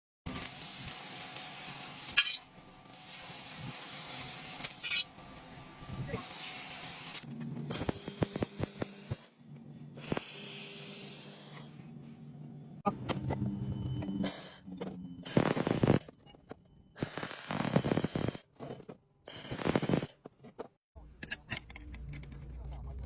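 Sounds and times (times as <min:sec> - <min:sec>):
welding arc sizzling and crackling: 0:00.3 - 0:05.2, 0:06.1 - 0:09.3, 0:10.0 - 0:11.7, 0:15.3 - 0:16.1, 0:17.0 - 0:18.5, 0:19.3 - 0:20.2
welding machine low hum: 0:00.3 - 0:05.5, 0:06.1 - 0:11.9, 0:13.3 - 0:18.5, 0:19.3 - 0:20.2.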